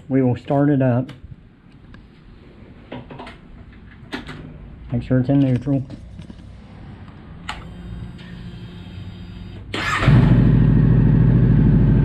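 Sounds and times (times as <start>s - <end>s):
motorcycle engine idling: 10.2s - 12.0s.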